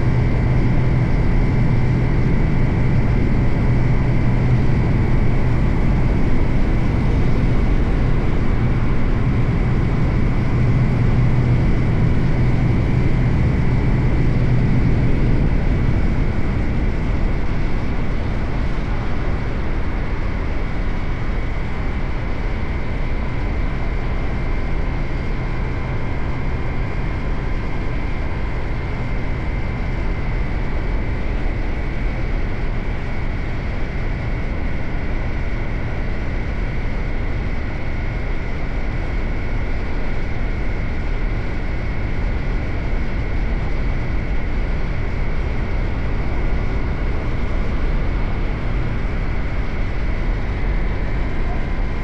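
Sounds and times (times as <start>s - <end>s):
rush of noise: 0.0s - 21.2s.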